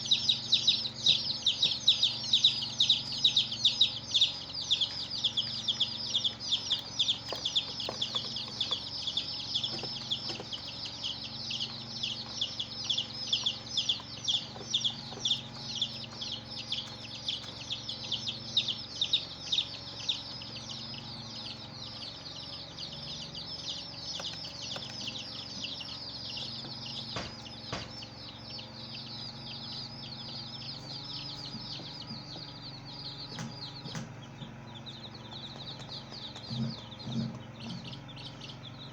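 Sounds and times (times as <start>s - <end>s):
baby chicks peeping: 0.0s - 38.9s
hen clucking: 0.0s - 38.9s.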